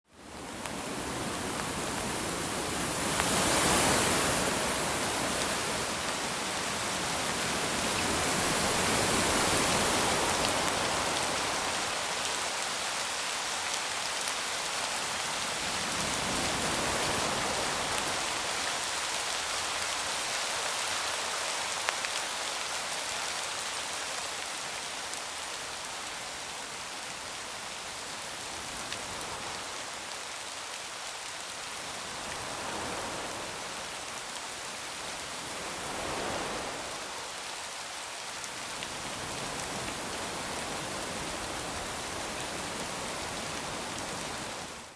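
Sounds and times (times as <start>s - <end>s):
wind gusts: 0.1s - 21.8s, 31.8s - 44.9s
rain hissing: 31.8s - 44.9s.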